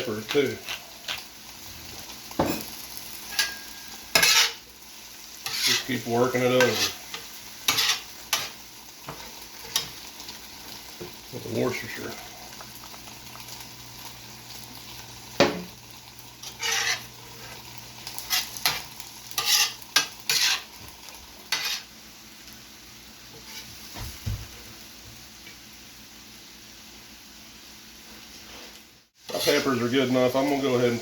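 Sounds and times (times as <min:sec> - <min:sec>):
food sizzling on a griddle: 0:00.0 - 0:31.0
metal spatula scraping griddle: 0:03.2 - 0:04.6, 0:05.4 - 0:09.9, 0:16.4 - 0:20.8, 0:21.5 - 0:21.9, 0:23.3 - 0:23.7, 0:28.5 - 0:29.8.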